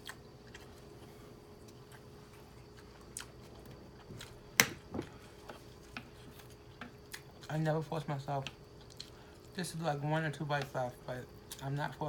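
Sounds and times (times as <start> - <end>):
quiet chewing: 0.0 - 4.4, 8.8 - 9.6.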